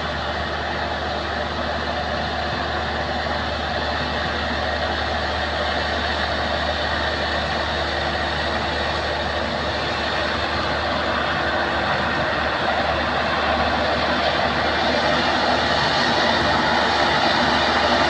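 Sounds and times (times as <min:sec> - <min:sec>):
heavy engine running steadily: 0:00.0 - 0:18.0.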